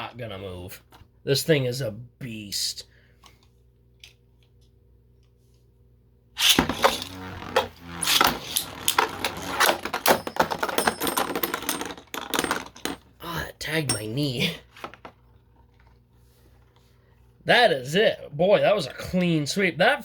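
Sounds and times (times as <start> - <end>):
spinning tops clattering and clashing: 6.4 - 13.1.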